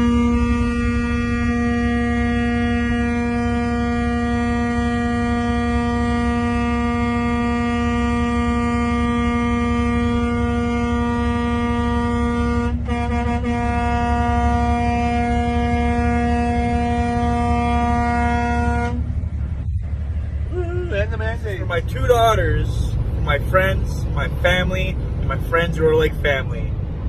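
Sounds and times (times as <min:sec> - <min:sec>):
truck air horn blast: 0:00.0 - 0:20.6
low rumble: 0:08.5 - 0:27.0.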